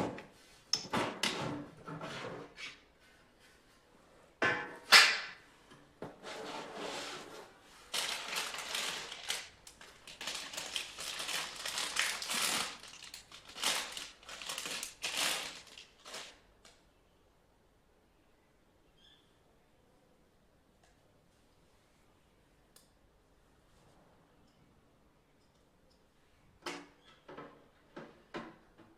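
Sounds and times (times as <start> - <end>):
crinkling and rustling handling noise: 7.1 - 16.8.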